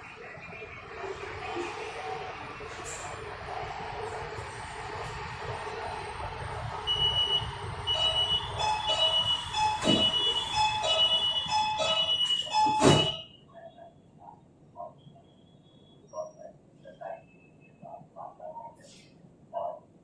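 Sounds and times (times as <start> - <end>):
train car humming: 0.0 - 13.7
two-pitch electronic door chime: 6.9 - 13.4
doors shutting thump: 9.6 - 10.4, 12.7 - 13.2.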